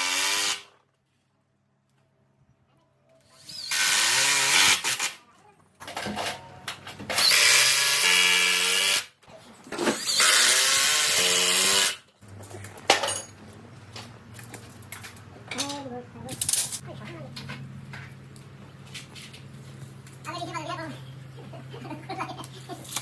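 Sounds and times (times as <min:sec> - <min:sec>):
power tool cutting: 0:00.0 - 0:00.7, 0:03.4 - 0:05.2, 0:07.2 - 0:09.1, 0:09.8 - 0:12.0.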